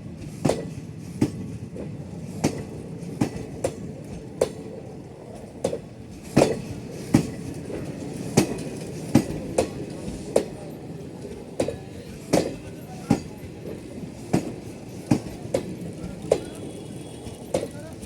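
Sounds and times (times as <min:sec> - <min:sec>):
steady rail rumble: 0:00.0 - 0:18.0
train wheels clacking over rail joints: 0:00.2 - 0:18.0.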